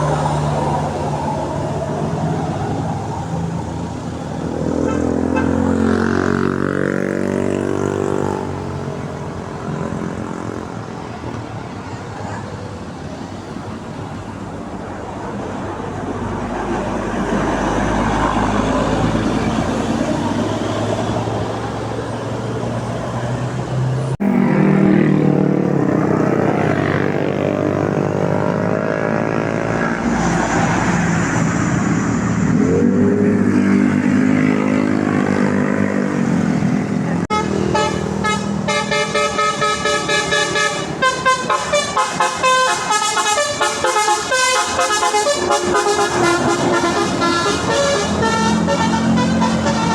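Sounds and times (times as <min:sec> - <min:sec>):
bus engine passing: 0:00.0 - 0:49.9
bus horns playing melody: 0:04.4 - 0:09.2, 0:37.2 - 0:49.9.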